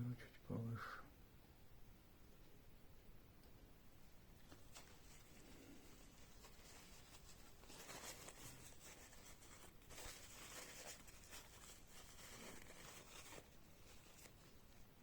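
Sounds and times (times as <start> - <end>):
hands rustling and scraping: 4.4 - 15.0.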